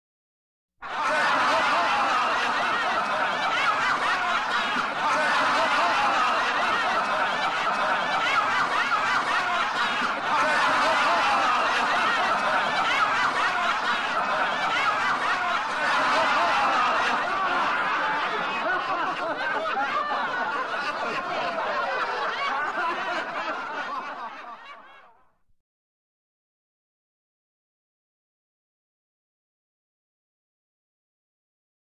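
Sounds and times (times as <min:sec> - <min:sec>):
studio audience laughing: 0:00.8 - 0:25.3.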